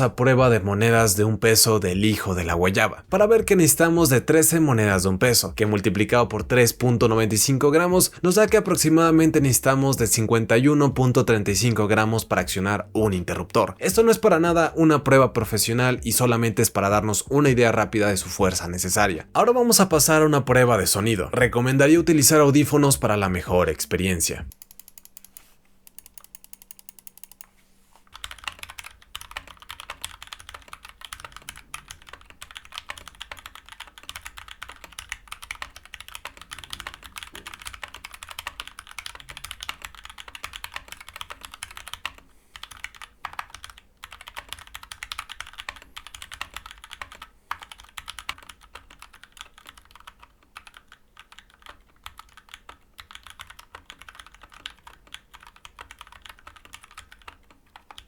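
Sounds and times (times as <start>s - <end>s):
mechanical keyboard typing: 3.2s - 10.3s, 24.5s - 27.5s, 28.1s - 58.0s.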